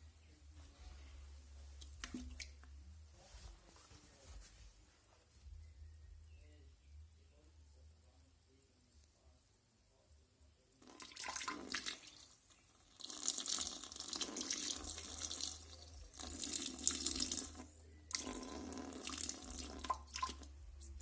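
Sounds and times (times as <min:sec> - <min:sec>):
water running from a tap into a sink: 0:10.8 - 0:20.5.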